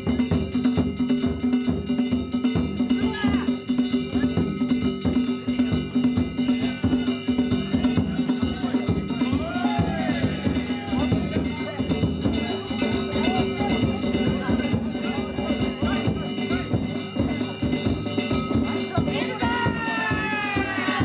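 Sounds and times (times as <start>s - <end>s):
drums beating: 0.0s - 21.0s
small hand gongs ringing: 0.0s - 21.0s
people shouting: 8.5s - 11.7s, 19.1s - 21.0s.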